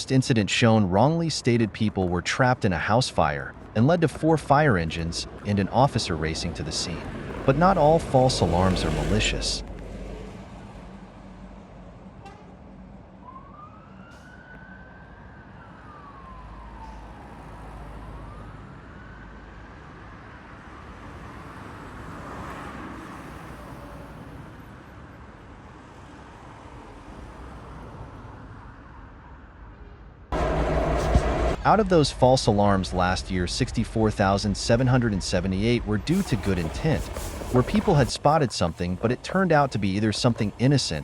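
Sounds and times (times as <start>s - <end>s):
road traffic rumble: 0.0s - 41.0s
distant fire engine siren wailing: 2.8s - 11.5s, 12.2s - 21.2s, 30.4s - 41.0s.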